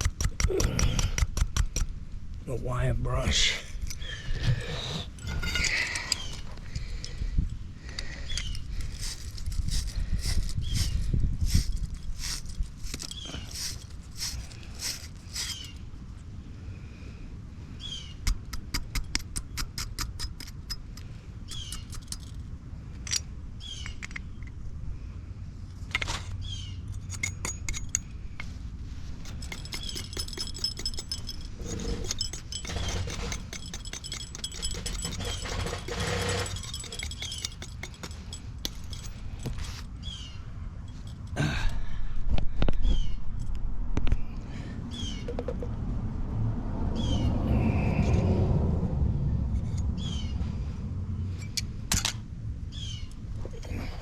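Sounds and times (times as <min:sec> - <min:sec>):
metallic clicks and clinks: 0:07.9 - 0:15.8, 0:18.8 - 0:24.6, 0:26.9 - 0:28.6, 0:29.2 - 0:39.9, 0:40.8 - 0:41.5
wire brush scrubbing metal: 0:08.8 - 0:15.8, 0:29.2 - 0:39.8.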